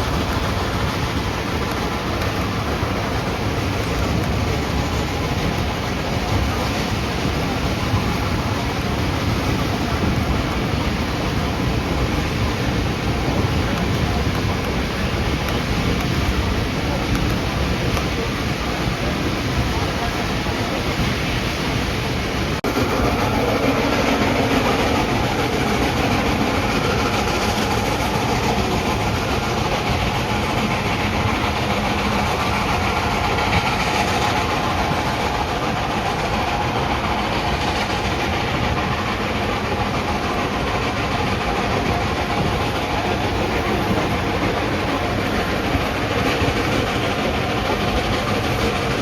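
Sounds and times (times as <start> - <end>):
train rumble and rail noise: 0.0 - 49.0.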